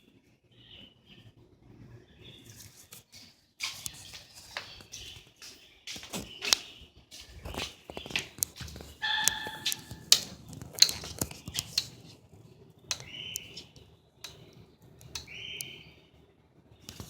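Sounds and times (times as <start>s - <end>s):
birds calling: 3.2s - 12.1s, 12.9s - 16.0s
sharp clicks and taps: 3.6s - 12.1s, 12.9s - 15.7s.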